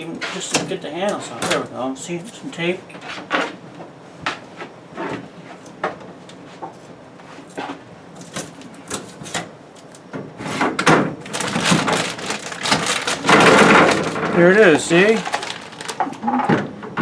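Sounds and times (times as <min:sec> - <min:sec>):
packing tape peeling: 0:11.2 - 0:16.2
plastic packaging crackling: 0:11.2 - 0:16.4.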